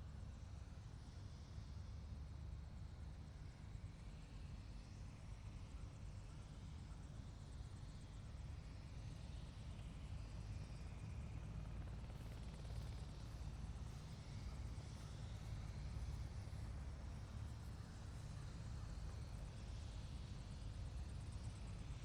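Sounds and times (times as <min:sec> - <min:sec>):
helicopter running: 0:11.1 - 0:21.8.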